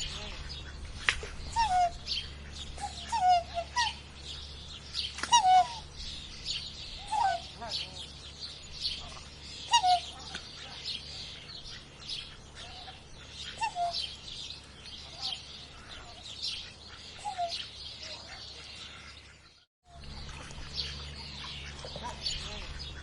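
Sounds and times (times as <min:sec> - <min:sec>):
many birds chirping: 0:00.0 - 0:23.0
lower falling bird call: 0:04.9 - 0:07.6.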